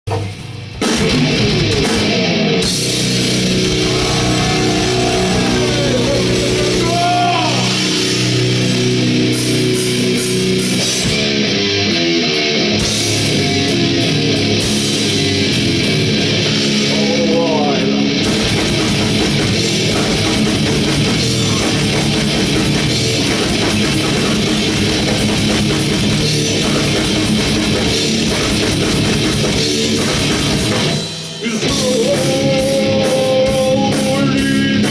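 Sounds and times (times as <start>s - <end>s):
distorted electric guitars: 0.0s - 34.9s
heavy metal band playing: 0.1s - 34.9s
fast dense drumming: 0.8s - 11.6s, 12.7s - 17.5s, 18.1s - 34.9s.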